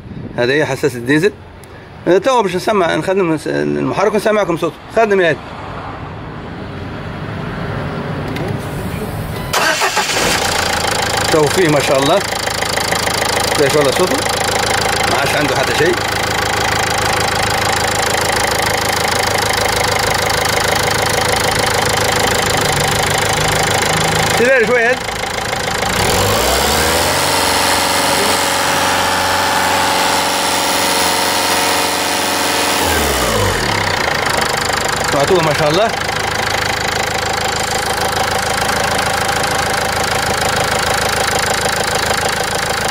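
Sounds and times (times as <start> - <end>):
diesel car engine idling: 8.3 - 42.9.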